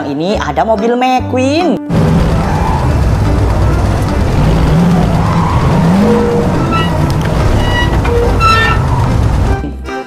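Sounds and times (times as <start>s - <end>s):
background music: 0.0s - 10.0s
race car engine revving: 1.9s - 9.6s.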